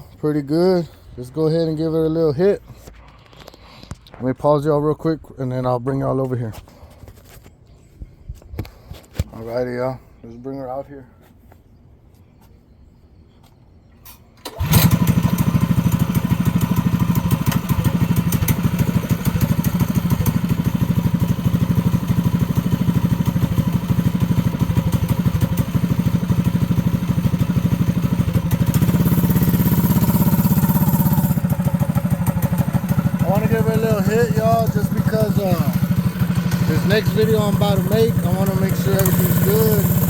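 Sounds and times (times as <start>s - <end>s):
mini bike engine running: 14.5s - 40.0s.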